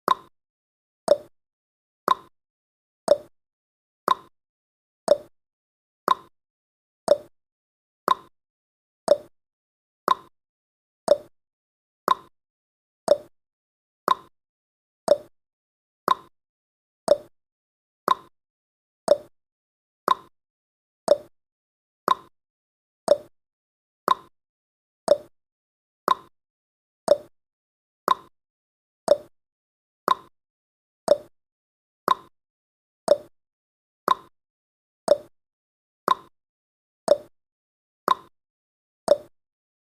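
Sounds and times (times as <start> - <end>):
timer ticking: 0.1 - 0.3, 1.1 - 1.3, 2.1 - 2.3, 3.1 - 3.3, 4.1 - 4.3, 5.1 - 5.3, 6.1 - 6.3, 7.1 - 7.3, 8.1 - 8.3, 9.1 - 9.3, 10.1 - 10.3, 11.1 - 11.3, 13.1 - 13.3, 14.1 - 14.3, 15.1 - 15.3, 16.1 - 16.3, 17.1 - 17.3, 18.1 - 18.3, 19.1 - 19.3, 20.1 - 20.3, 21.1 - 21.3, 23.1 - 23.3, 25.1 - 25.3, 27.1 - 27.3, 29.1 - 29.3, 31.1 - 31.3, 33.1 - 33.3, 34.1 - 34.3, 35.1 - 35.3, 36.1 - 36.3, 37.1 - 37.3, 39.1 - 39.3.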